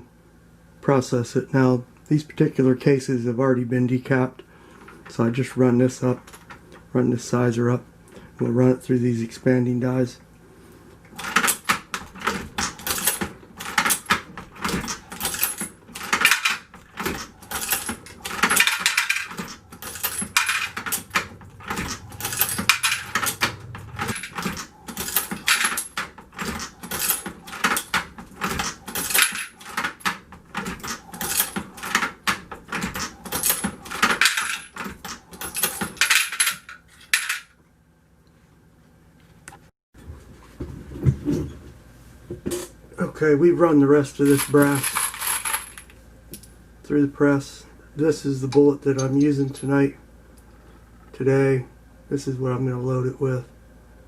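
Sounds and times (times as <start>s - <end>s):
brass cases clinking and rattling: 11.2s - 37.5s, 44.2s - 46.0s.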